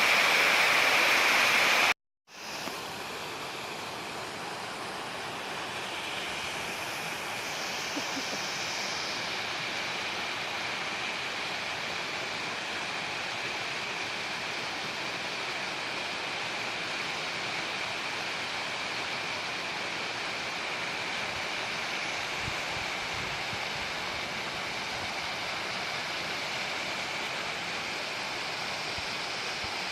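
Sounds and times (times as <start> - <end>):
running water rushing: 0.0 - 29.9
thin high steady tone: 2.3 - 10.3.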